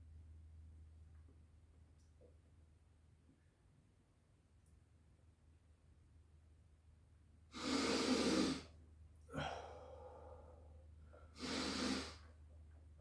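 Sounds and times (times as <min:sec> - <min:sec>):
person breathing deeply: 0:09.3 - 0:12.2.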